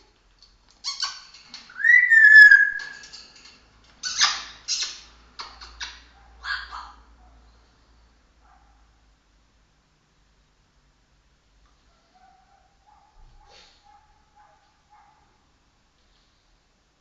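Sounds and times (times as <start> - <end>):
parrot harsh raspy calls: 1.7 - 3.1, 4.0 - 7.1
parrot whistle: 1.7 - 3.1.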